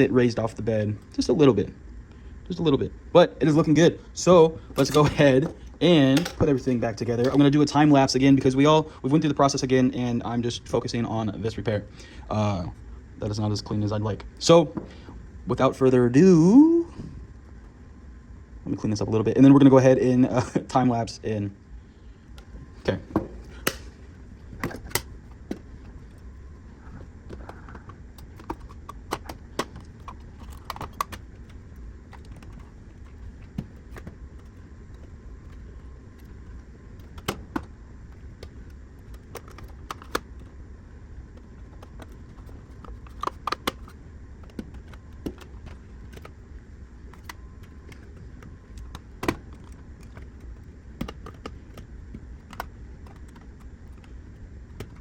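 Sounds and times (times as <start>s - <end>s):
low hum: 0.0s - 55.0s
clicks and clatter of small parts: 27.3s - 35.6s, 41.8s - 46.4s.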